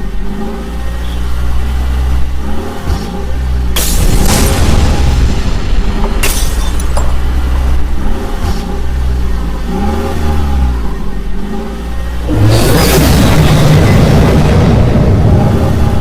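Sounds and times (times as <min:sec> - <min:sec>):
vehicle engine revving: 0:00.0 - 0:06.2, 0:07.2 - 0:16.0
loud rushing noise: 0:03.7 - 0:09.2, 0:12.4 - 0:16.0.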